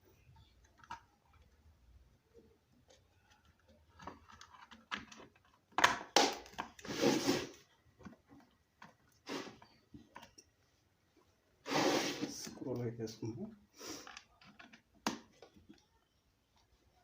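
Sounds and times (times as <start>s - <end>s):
plastic scraping and rustling: 2.8s - 10.5s
plastic parts clicking: 3.3s - 6.8s.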